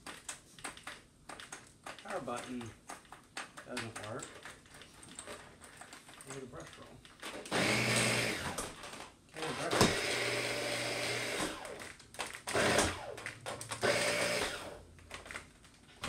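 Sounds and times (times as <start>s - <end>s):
vacuum cleaner motor whirring: 7.4s - 11.9s, 12.5s - 14.8s.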